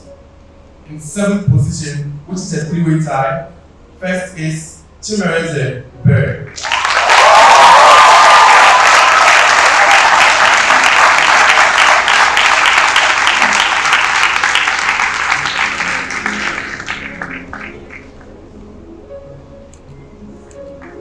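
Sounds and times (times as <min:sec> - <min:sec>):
audience applauding: 0:06.5 - 0:18.4
audience cheering: 0:06.6 - 0:16.7.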